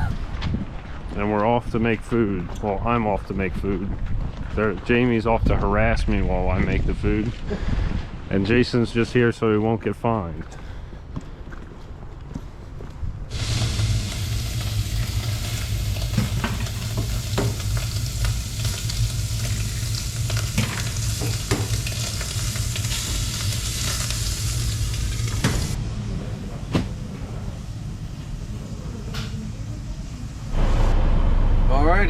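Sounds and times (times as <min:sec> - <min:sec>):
bacon and eggs sizzling in a pan: 0:13.3 - 0:25.8
sharp clicks and pops of frying: 0:13.3 - 0:25.8.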